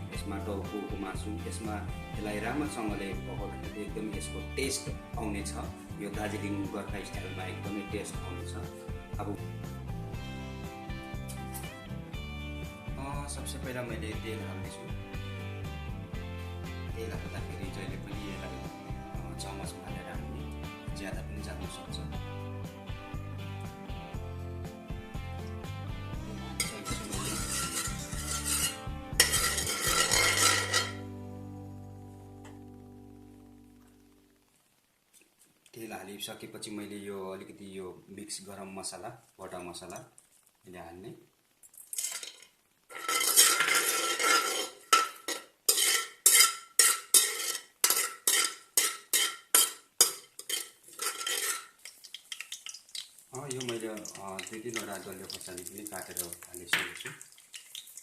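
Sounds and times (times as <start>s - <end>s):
background music: 0.0s - 34.5s, 53.4s - 56.8s
spices frying in oil: 24.9s - 31.2s, 38.1s - 58.0s
metal spoon scraping a pan: 26.6s - 31.1s, 41.9s - 58.0s.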